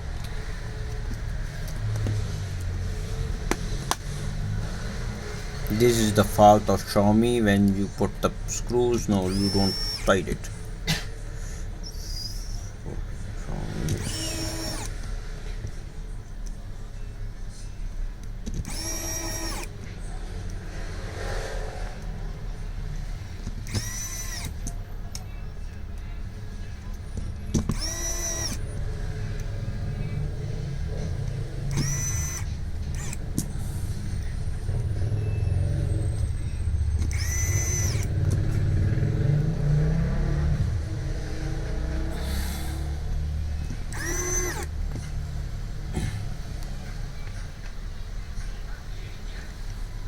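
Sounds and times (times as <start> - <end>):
low mechanical rumble: 0.0 - 50.0
electric screwdriver whirring: 9.2 - 10.5, 13.8 - 15.1, 18.4 - 19.8, 23.5 - 24.8, 27.5 - 28.7, 31.6 - 33.5, 37.0 - 38.5, 43.8 - 44.8.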